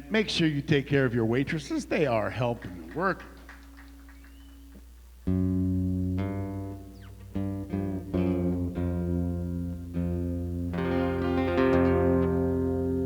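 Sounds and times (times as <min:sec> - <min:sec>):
electric guitar chords: 0:03.4 - 0:13.0.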